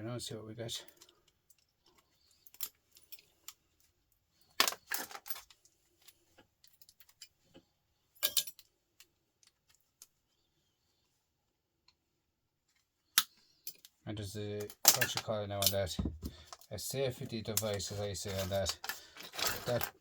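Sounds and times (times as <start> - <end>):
metal parts and tools clinking: 4.4 - 7.4, 8.1 - 10.1, 14.6 - 16.6, 17.2 - 20.0.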